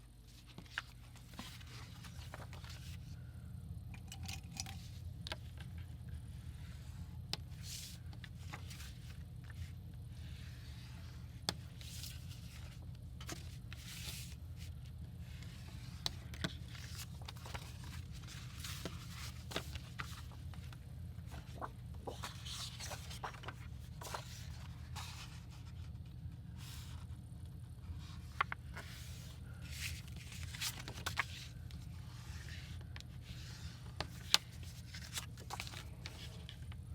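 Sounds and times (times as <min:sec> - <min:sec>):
steady low hum: 0:00.0 - 0:36.9
paper rustling: 0:00.3 - 0:03.2, 0:11.6 - 0:25.9, 0:27.9 - 0:36.8.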